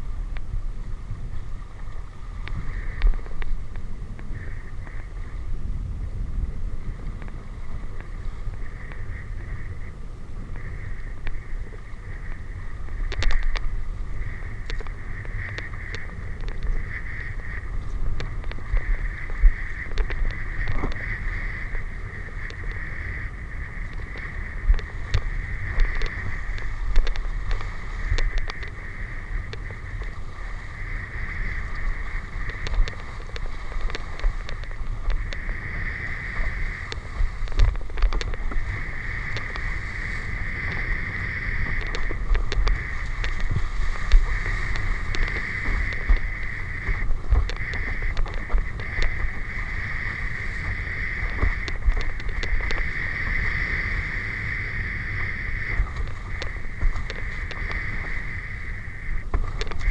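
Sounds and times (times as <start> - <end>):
wind buffeting microphone: 0.0 - 59.9
scattered clicks: 12.9 - 59.9.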